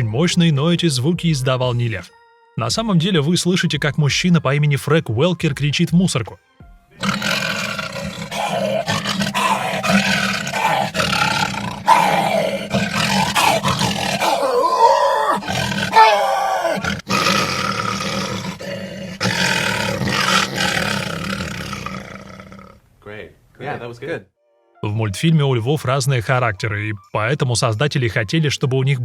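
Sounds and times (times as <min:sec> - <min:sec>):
man roaring into metal can: 0:07.0 - 0:22.8.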